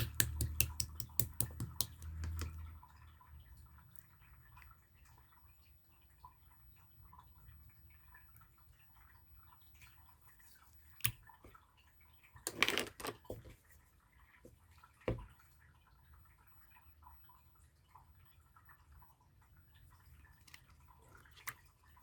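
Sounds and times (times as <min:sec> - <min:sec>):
slime wet popping and crackling: 0:00.0 - 0:02.6.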